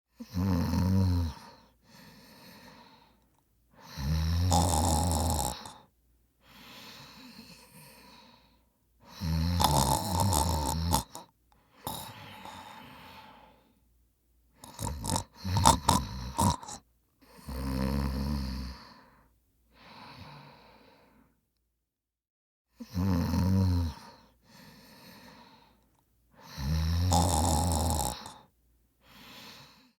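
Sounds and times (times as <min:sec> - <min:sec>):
person snoring: 0:00.2 - 0:03.2, 0:03.8 - 0:05.9, 0:09.1 - 0:13.7, 0:14.6 - 0:19.1, 0:22.8 - 0:25.8, 0:26.4 - 0:28.5
sharp breath catches: 0:06.4 - 0:08.7, 0:29.0 - 0:30.0.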